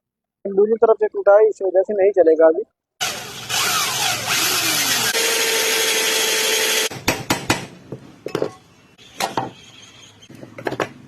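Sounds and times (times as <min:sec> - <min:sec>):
electric power tool running: 0:03.0 - 0:06.9
knocks and clicks of parts handled: 0:10.3 - 0:11.0.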